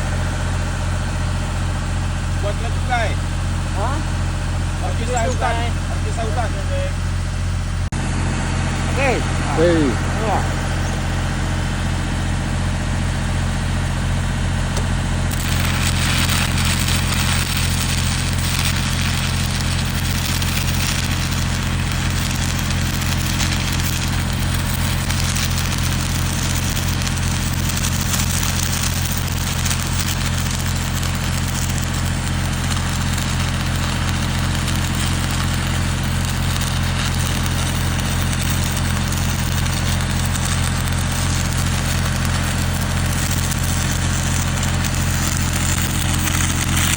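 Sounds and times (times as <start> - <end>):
low machine hum: 0.0 - 46.9
welding arc crackling: 1.8 - 8.0, 8.8 - 46.9.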